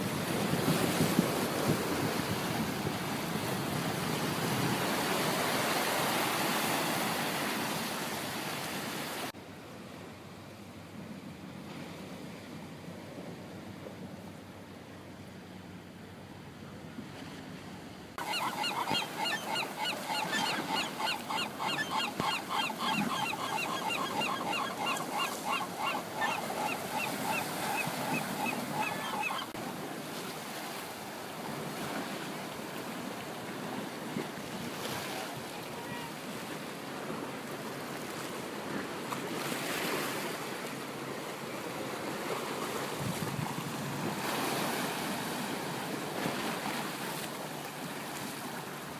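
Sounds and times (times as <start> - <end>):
bird calling repeated notes: 18.2 - 29.5.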